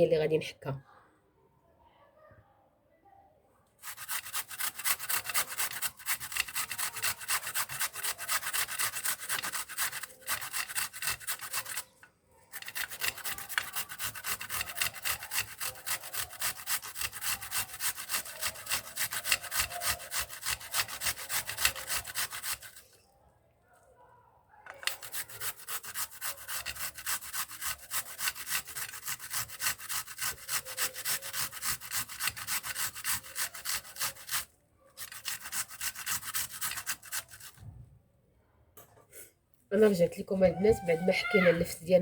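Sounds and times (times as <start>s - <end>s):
turnip grated on a grater: 3.8s - 23.0s, 24.7s - 37.6s.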